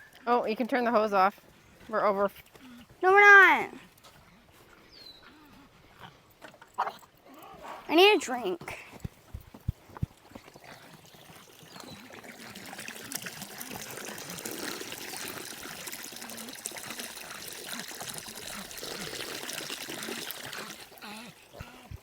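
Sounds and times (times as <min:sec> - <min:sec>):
water running from a hose: 0:10.4 - 0:22.0.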